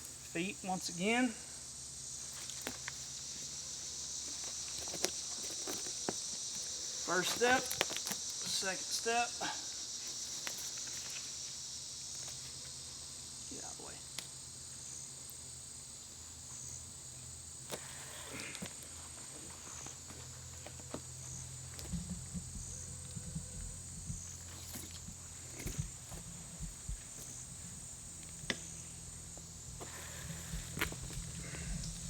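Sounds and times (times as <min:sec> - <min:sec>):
high insect chorus: 0:00.0 - 0:32.0
boots and metal gear clicking: 0:04.2 - 0:08.6, 0:17.7 - 0:28.5.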